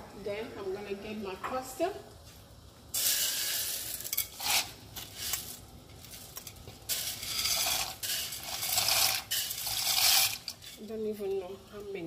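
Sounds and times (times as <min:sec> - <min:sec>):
pasta rustling and pot clattering: 0:03.0 - 0:11.0.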